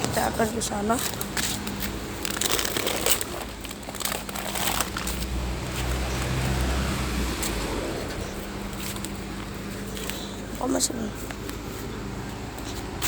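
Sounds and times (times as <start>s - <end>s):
low vehicle engine rumble: 0.0s - 13.0s.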